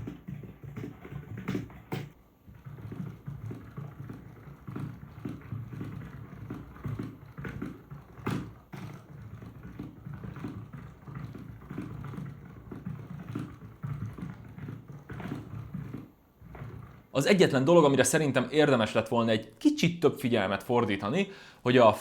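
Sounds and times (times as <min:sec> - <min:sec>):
keyboard typing: 0:00.0 - 0:16.1.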